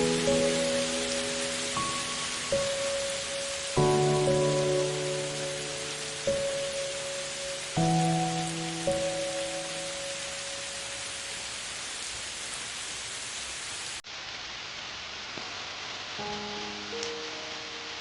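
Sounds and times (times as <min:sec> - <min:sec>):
steady rain: 0:00.0 - 0:18.0.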